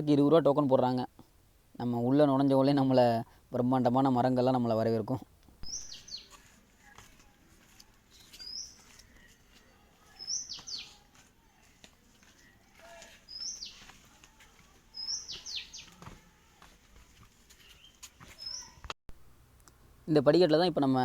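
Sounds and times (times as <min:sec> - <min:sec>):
songbird calling: 0:05.6 - 0:06.5, 0:08.1 - 0:11.1, 0:12.9 - 0:14.0, 0:14.9 - 0:16.0, 0:17.6 - 0:18.8.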